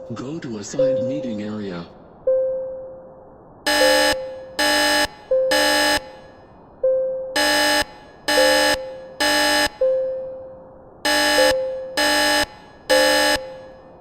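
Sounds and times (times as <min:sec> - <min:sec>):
fire alarm horn blasts: 0:03.7 - 0:06.4, 0:07.4 - 0:10.2, 0:11.0 - 0:14.0.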